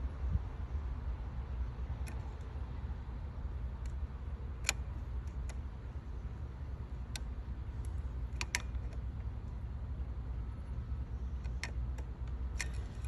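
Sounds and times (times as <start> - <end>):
steady low rumble: 0.0 - 13.0
light sharp clicks: 1.9 - 2.8, 3.7 - 5.9, 7.0 - 9.6, 11.3 - 13.0.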